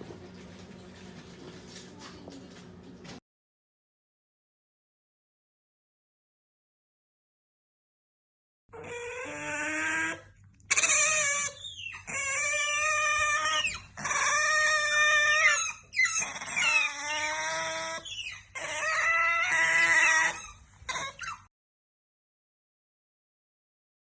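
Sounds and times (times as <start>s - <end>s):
otter squealing calls: 8.8s - 21.5s.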